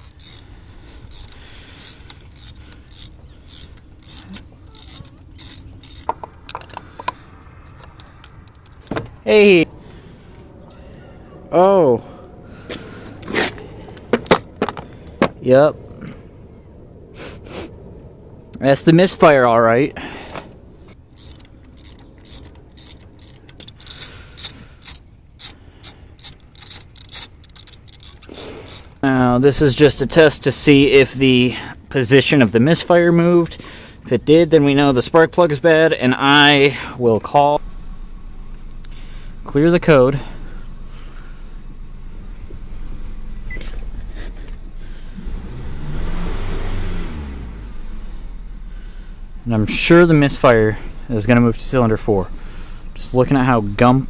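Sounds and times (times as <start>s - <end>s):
socket ratchet clicking: 0.0s - 8.8s, 21.1s - 29.0s.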